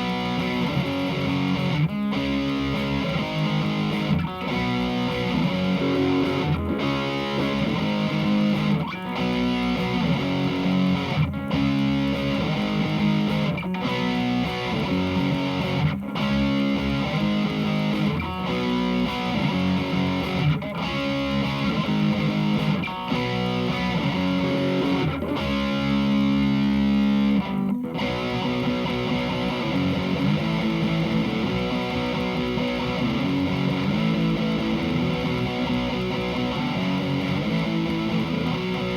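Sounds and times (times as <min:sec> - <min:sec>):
distorted electric guitar chords: 0:00.0 - 0:38.9.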